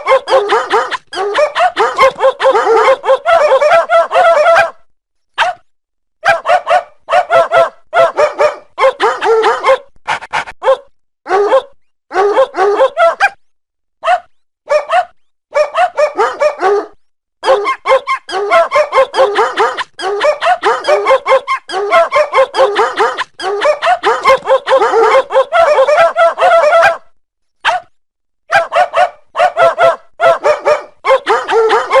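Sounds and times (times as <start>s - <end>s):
dog howling and whining: 0.0s - 4.8s, 15.6s - 27.0s, 28.7s - 32.0s.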